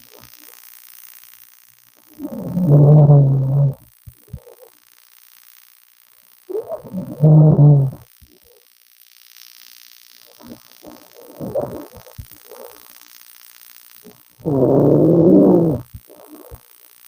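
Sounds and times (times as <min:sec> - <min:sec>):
woman snoring: 0:02.1 - 0:03.8, 0:06.5 - 0:08.1, 0:10.3 - 0:12.8, 0:14.4 - 0:16.6.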